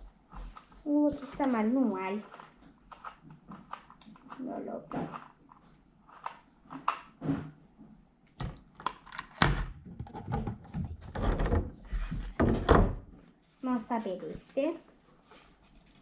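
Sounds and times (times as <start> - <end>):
knocks and thumps: 7.2 - 7.6, 9.4 - 13.1.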